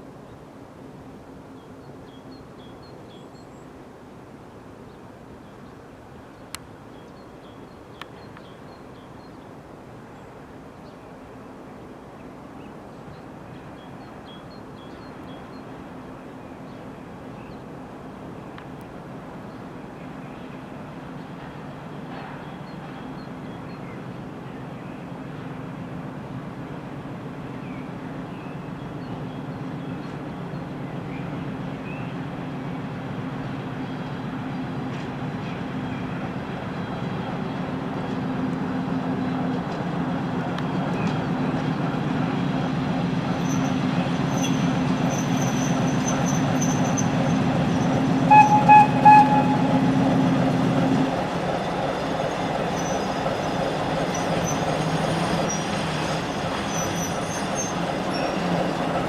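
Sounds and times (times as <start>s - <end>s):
diesel locomotive engine: 13.6s - 59.0s
train wheel squeal: 43.3s - 59.0s
locomotive horn toots: 47.8s - 50.0s.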